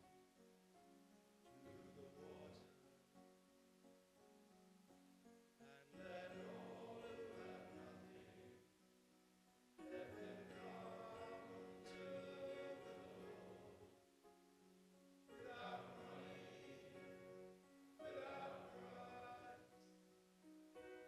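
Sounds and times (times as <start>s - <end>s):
choir singing: 5.7s - 8.7s, 9.8s - 14.0s, 15.3s - 19.8s.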